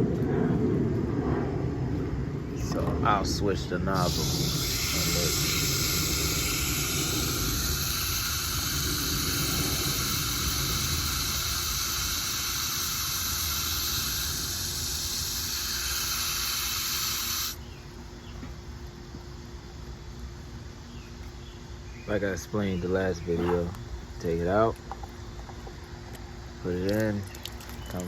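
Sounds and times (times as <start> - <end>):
fountain spraying and splashing water: 4.0 - 17.6.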